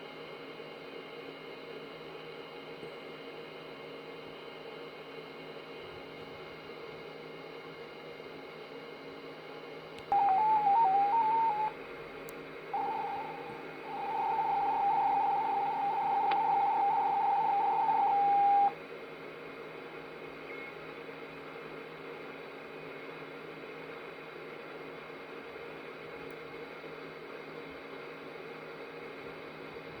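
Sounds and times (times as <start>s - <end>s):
long steady electronic tone: 10.0s - 18.8s
warbling electronic beep: 10.1s - 11.7s, 12.8s - 18.8s
radio band hiss: 10.1s - 11.8s, 12.7s - 18.8s.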